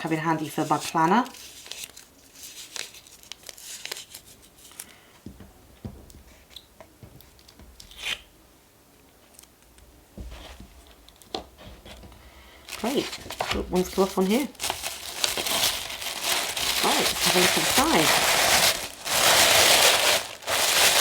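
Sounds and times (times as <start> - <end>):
paper rustling and tearing: 0.6 - 4.9, 12.7 - 21.0.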